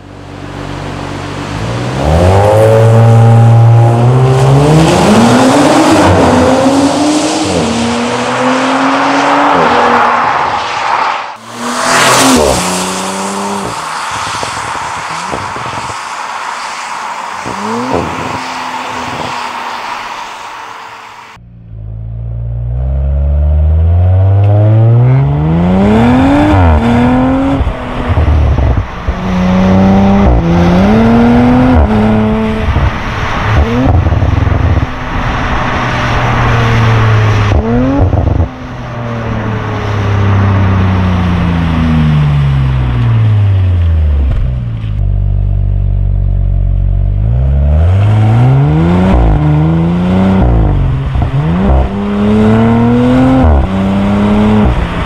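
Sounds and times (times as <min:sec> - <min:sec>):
car engine accelerating hard: 0:16.7 - 0:44.8, 0:46.2 - 0:55.0.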